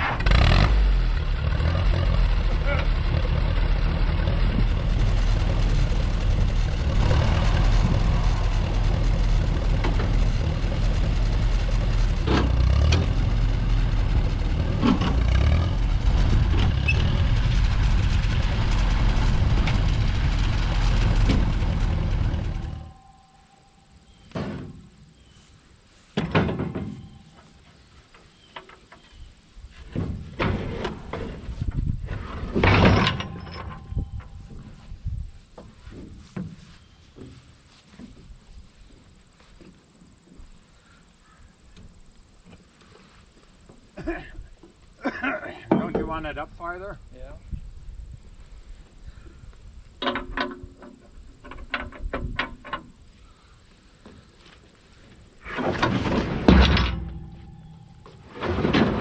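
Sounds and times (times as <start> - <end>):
tractor engine running: 0.0 - 40.9, 47.6 - 59.0
clunks: 1.4 - 25.4, 26.1 - 38.4, 45.5 - 46.4, 49.9 - 53.1, 54.0 - 59.0.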